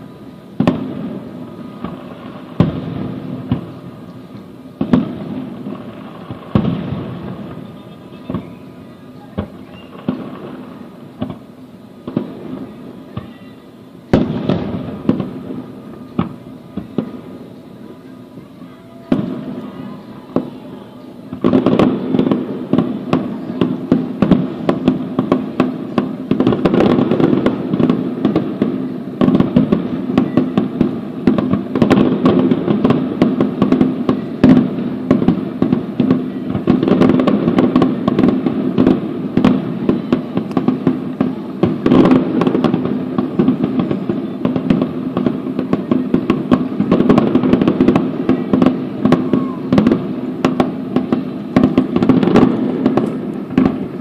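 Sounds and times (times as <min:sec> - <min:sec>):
firework shells bursting: 0:18.6 - 0:54.0.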